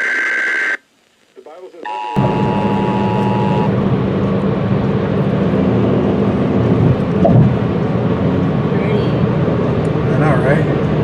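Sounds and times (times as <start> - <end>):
steady noise with low hum: 0.8 - 11.0
two-tone alert signal: 1.9 - 3.7.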